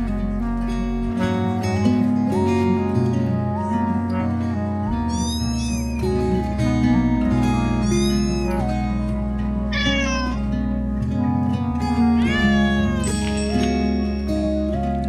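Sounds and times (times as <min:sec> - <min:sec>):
background music with held notes: 0:00.0 - 0:15.0
cat meowing: 0:05.0 - 0:06.0, 0:07.8 - 0:08.9, 0:09.7 - 0:10.5, 0:12.0 - 0:13.3.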